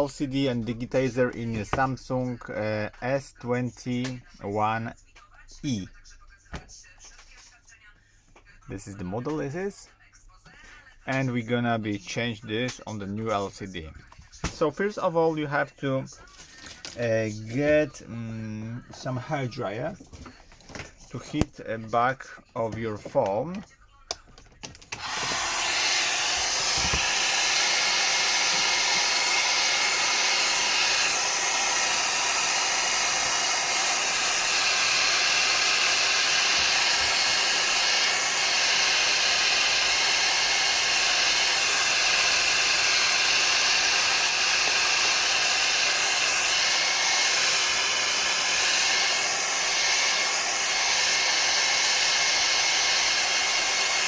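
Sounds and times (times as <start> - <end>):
hair dryer blowing: 0.0 - 1.9, 24.9 - 54.0.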